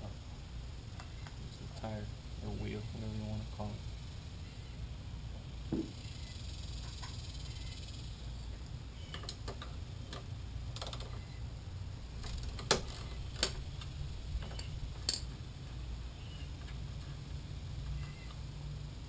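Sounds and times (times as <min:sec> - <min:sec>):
low steady rumble: 0:00.0 - 0:19.0
hand tools clicking and clinking: 0:14.4 - 0:15.3.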